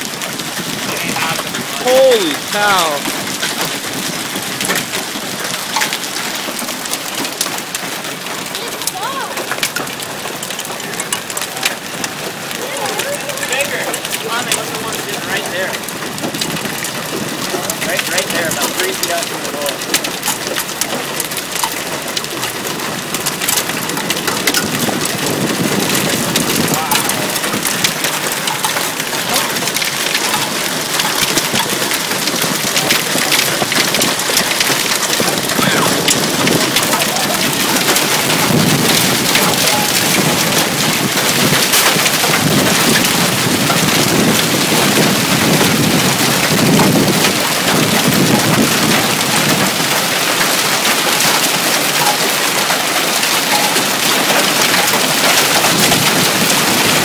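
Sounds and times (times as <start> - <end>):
hail clattering: 0.0 - 57.0
deep thunder rumble: 22.2 - 52.1.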